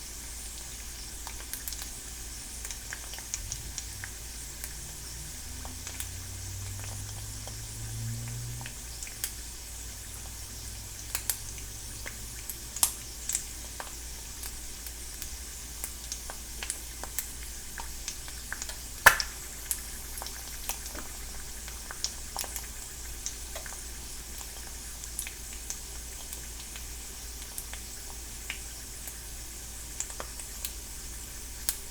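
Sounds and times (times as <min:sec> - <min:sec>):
egg sizzling in a pan: 0:00.0 - 0:31.9
crackling pops: 0:18.6 - 0:19.8.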